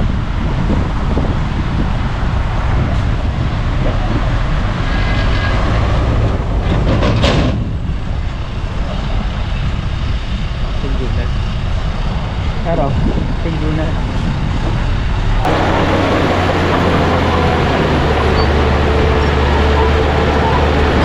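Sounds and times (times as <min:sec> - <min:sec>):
heavy diesel machinery rumbling: 0:00.0 - 0:11.2, 0:12.7 - 0:21.0.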